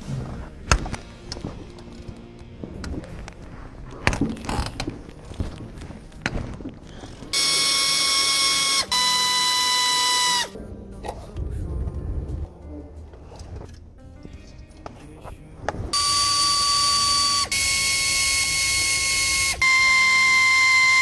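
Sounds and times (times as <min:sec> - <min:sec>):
power tool whirring: 0:07.0 - 0:10.6, 0:16.0 - 0:21.0.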